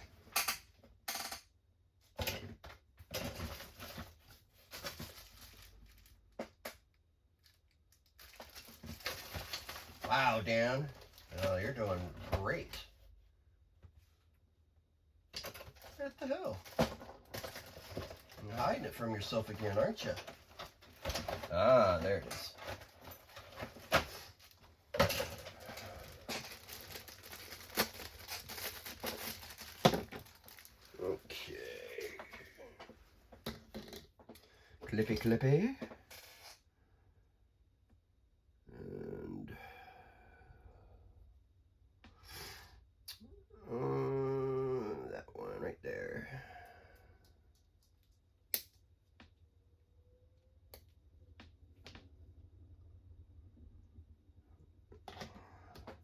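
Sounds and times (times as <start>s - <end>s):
plastic parts clicking and rustling: 2.2s - 10.2s, 15.3s - 16.0s, 16.6s - 31.0s
rustling: 19.5s - 31.4s.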